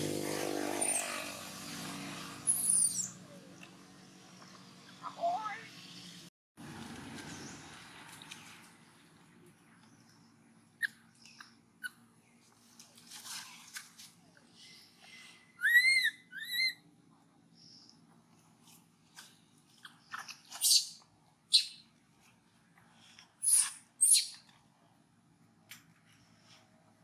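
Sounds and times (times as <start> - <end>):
monkey whistling squeaks: 0.8 - 1.2, 2.5 - 3.2, 15.6 - 16.8, 20.6 - 21.8, 23.4 - 24.4.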